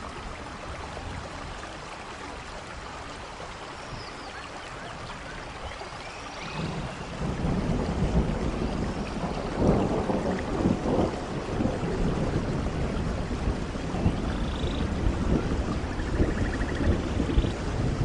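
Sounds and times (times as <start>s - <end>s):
steady rain: 0.0s - 18.0s
rolling thunder: 6.4s - 18.0s.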